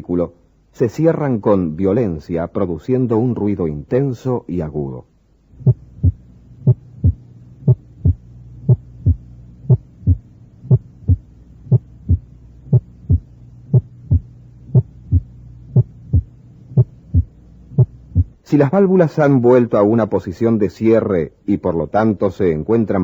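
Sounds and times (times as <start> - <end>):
low hum: 5.2 - 18.5
heartbeat thuds: 5.6 - 18.4.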